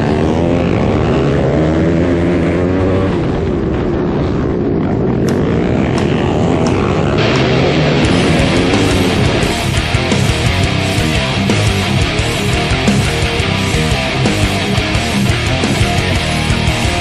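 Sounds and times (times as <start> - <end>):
atv engine revving: 0.0 - 17.0.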